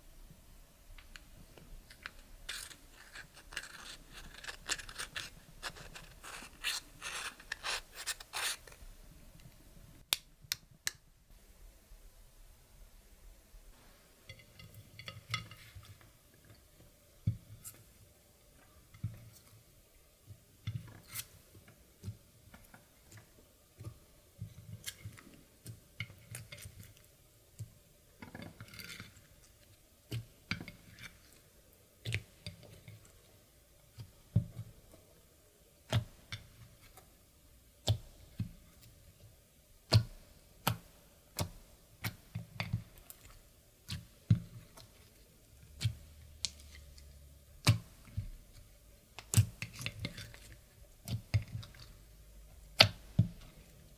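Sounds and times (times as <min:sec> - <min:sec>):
slime squishing: 0:01.9 - 0:08.8.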